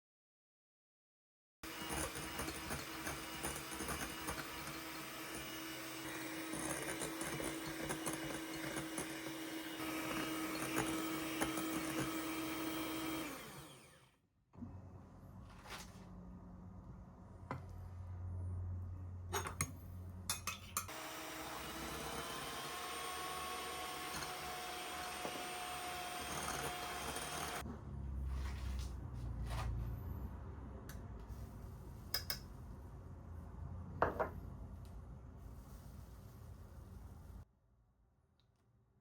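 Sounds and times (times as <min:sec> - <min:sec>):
dishes and glassware clinking: 0:19.3 - 0:20.9.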